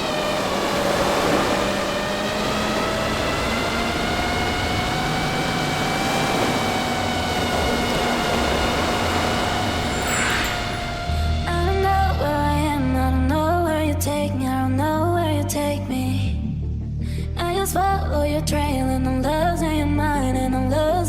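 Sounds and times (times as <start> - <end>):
drone propellers whining: 0.0 - 12.3
rush of air: 7.6 - 11.6.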